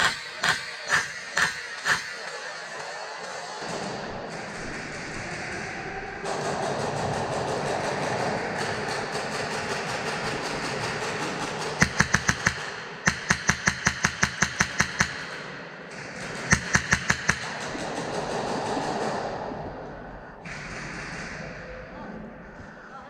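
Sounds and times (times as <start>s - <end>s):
airsoft gun firing sharp shots: 6.3s - 19.2s.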